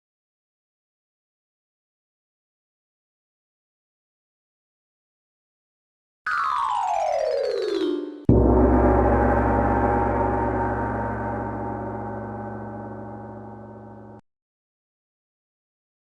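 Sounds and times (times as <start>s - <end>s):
gong ringing: 8.3s - 14.2s.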